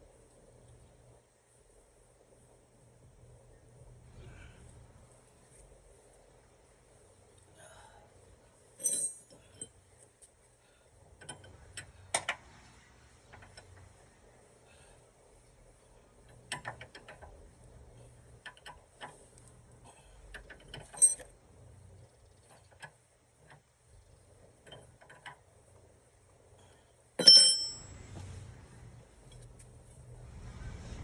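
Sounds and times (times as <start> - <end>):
ringing metal clang: 27.2 - 27.9.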